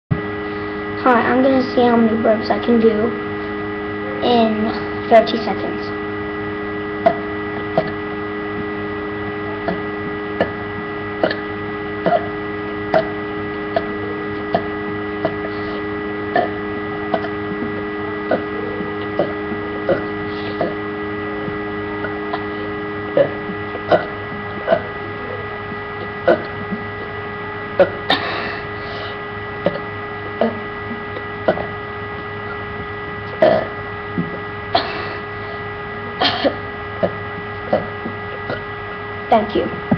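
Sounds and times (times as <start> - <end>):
steady electrical hum: 0.1 - 39.9
person burping: 7.0 - 8.1, 9.6 - 10.6, 11.2 - 20.8, 22.0 - 22.5, 23.1 - 25.4, 26.0 - 27.1, 27.8 - 31.8, 33.3 - 35.2, 36.2 - 38.7.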